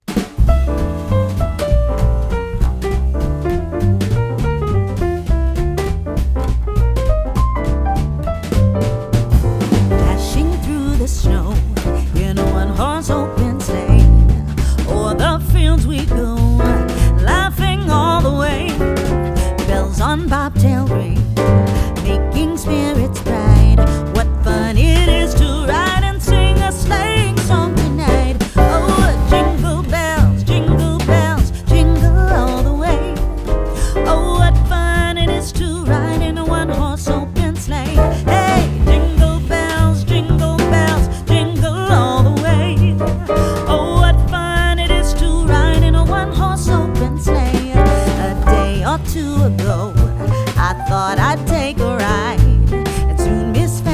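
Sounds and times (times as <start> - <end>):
song with vocals bass and drums: 0.0 - 53.9.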